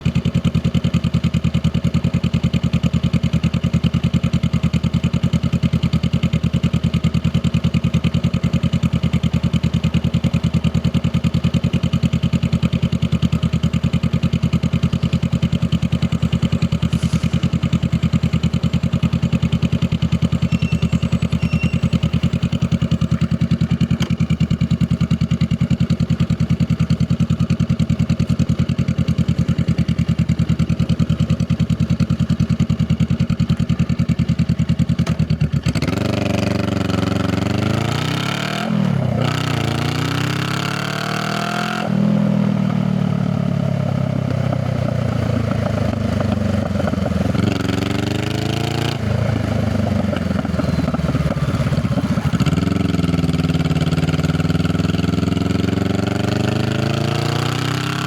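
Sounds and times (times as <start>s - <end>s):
motorcycle engine idling: 0.0s - 41.2s, 42.0s - 58.0s.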